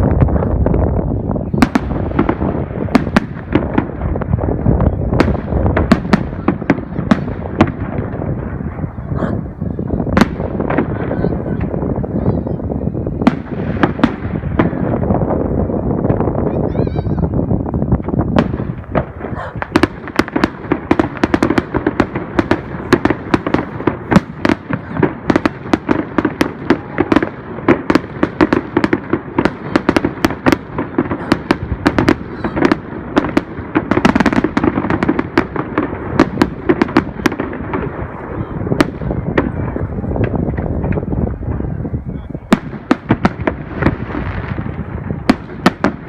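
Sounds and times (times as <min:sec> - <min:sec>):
fireworks bangs and crackles: 0:00.0 - 0:46.0.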